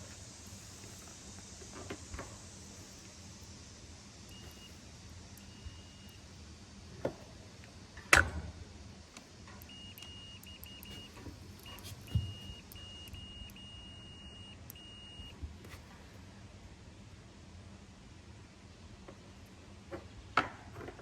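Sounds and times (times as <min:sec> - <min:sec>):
multimeter beeps: 0:04.3 - 0:04.8, 0:05.4 - 0:06.3, 0:09.6 - 0:15.4
small thump: 0:11.8 - 0:12.6.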